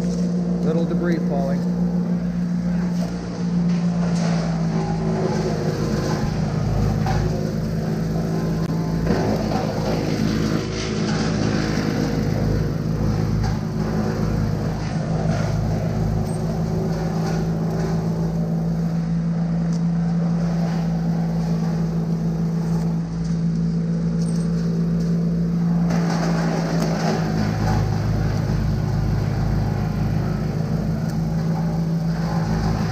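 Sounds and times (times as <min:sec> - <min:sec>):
engine running steadily: 0:00.0 - 0:32.9.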